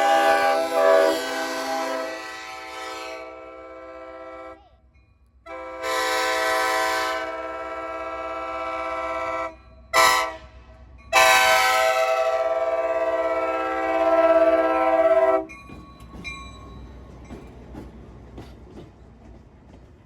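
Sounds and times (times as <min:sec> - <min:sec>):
multi-chime train horn blasts: 0:00.0 - 0:04.6, 0:05.4 - 0:15.6.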